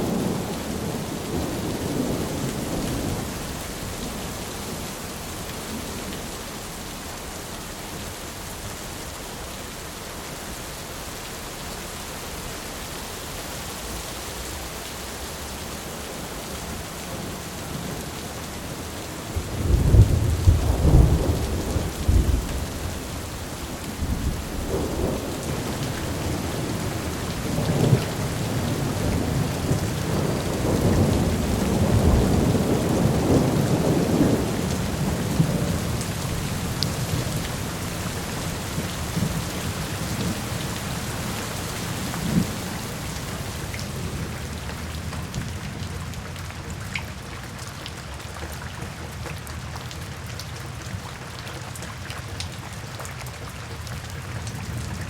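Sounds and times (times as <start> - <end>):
steady rain falling: 0.0 - 55.0
thunder rumbling: 16.7 - 41.3.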